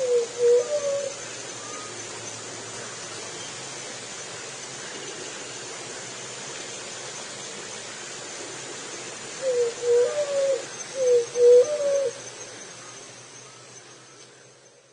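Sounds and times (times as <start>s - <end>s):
dove cooing: 0.0s - 1.9s, 9.4s - 12.2s
steady hiss: 0.0s - 14.9s.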